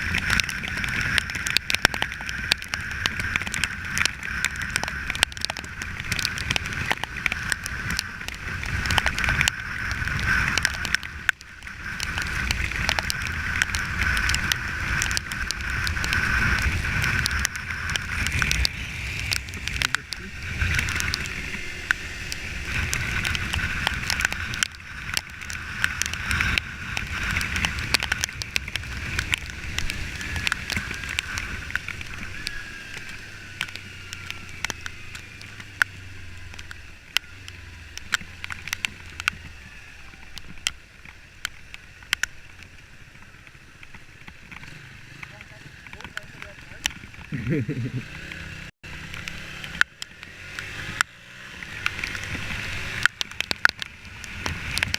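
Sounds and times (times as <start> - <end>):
wind rushing over microphone: 0.0 - 41.9
motorcycle engine running: 0.0 - 54.9.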